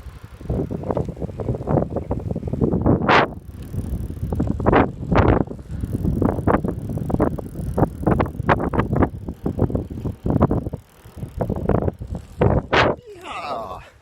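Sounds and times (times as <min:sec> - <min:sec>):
bicycle frame rattling: 0:00.0 - 0:14.0
wind buffeting microphone: 0:00.0 - 0:14.0.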